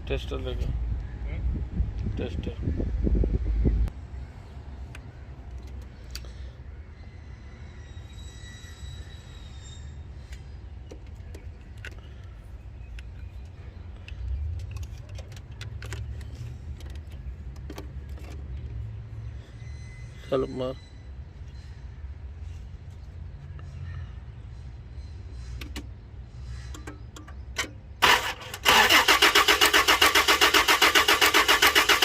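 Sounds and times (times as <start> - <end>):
steady low rumble: 0.0 - 5.4.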